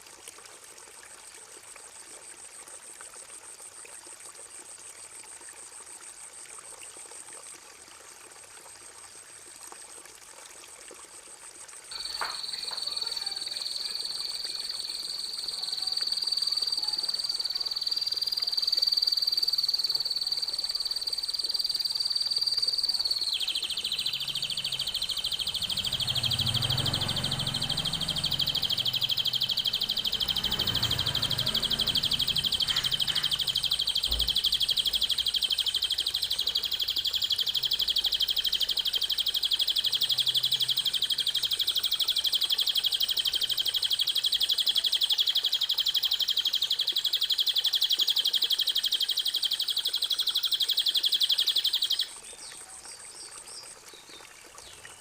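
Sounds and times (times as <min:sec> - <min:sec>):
fast buzzy bird trill: 0:11.9 - 0:52.1.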